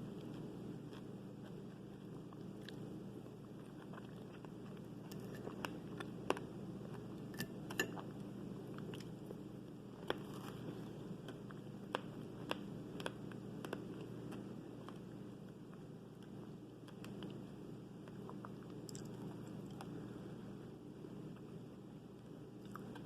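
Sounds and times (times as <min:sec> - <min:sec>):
fruit being bitten and chewed: 0:00.1 - 0:08.1, 0:10.0 - 0:15.1.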